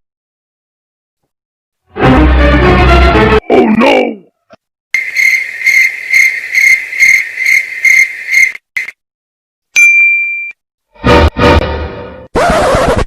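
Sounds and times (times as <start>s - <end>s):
bright ding: 9.8s - 10.6s.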